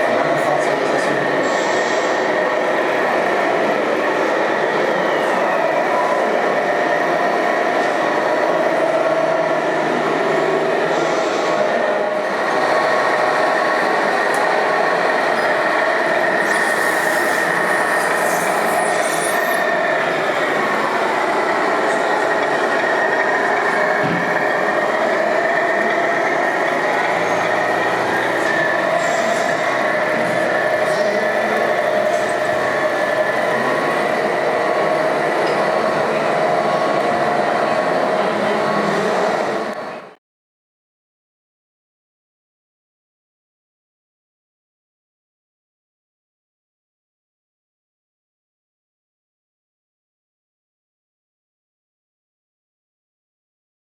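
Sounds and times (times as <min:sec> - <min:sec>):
rc model trucks whining: 0:00.0 - 0:40.1.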